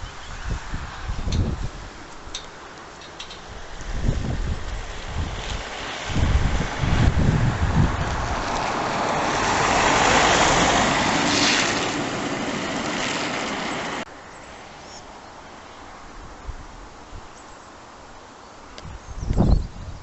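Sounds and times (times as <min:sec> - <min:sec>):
storm wind buffeting microphone: 0:00.0 - 0:02.4, 0:03.2 - 0:14.1, 0:18.8 - 0:20.0
quiet outdoor background: 0:00.0 - 0:06.0, 0:14.0 - 0:20.0.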